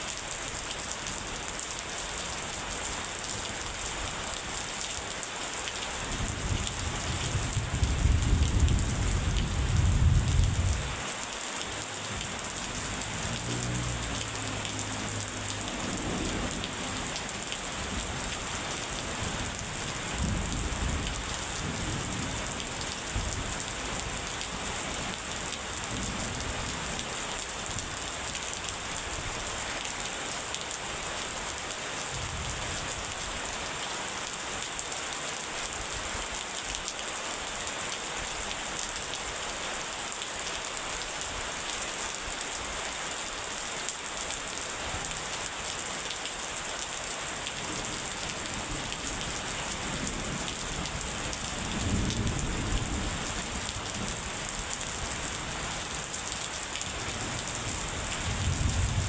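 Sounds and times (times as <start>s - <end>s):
heavy rain hissing: 5.4s - 27.2s
thunder rumbling: 6.4s - 11.0s, 58.2s - 59.0s.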